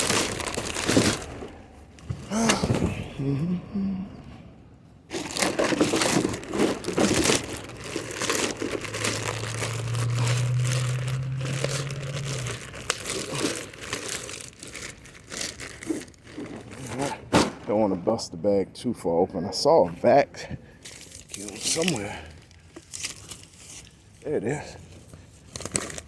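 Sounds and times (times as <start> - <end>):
plastic bag crinkling: 0.0 - 2.4, 5.1 - 17.2, 20.9 - 24.1, 25.3 - 26.0.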